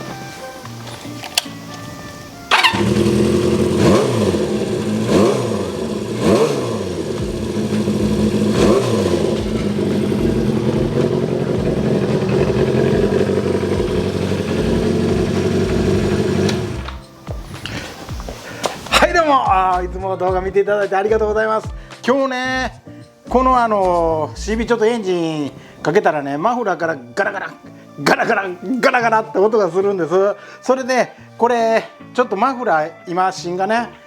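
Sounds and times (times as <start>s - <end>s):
motorcycle engine blipping and idling: 0.0s - 19.7s
muffler rattling: 6.9s - 17.0s.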